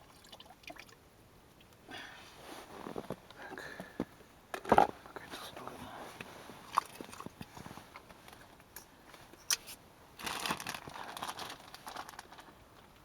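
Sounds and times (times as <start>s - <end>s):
plastic bag crinkling: 10.2s - 12.9s.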